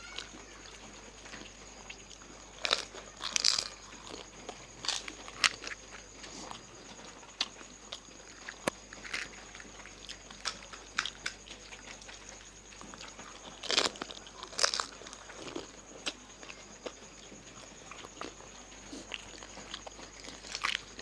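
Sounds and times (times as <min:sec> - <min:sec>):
chewing: 0:00.0 - 0:21.0
crisp shells crunching between teeth: 0:02.6 - 0:06.1, 0:08.0 - 0:11.9, 0:12.9 - 0:16.2.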